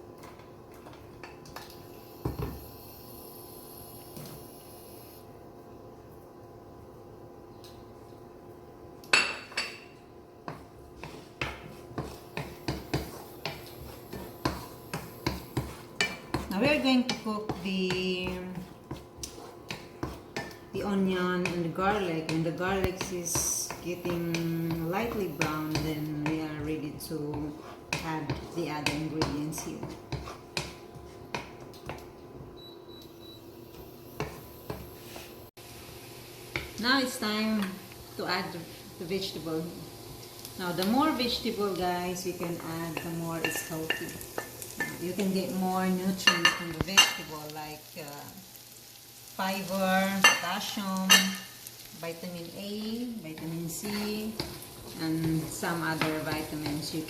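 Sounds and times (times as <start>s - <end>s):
utensil clacking on frying pan: 9.1s - 32.1s, 52.8s - 57.0s
food stirred in oil: 10.4s - 32.6s, 33.8s - 35.6s, 39.8s - 57.0s.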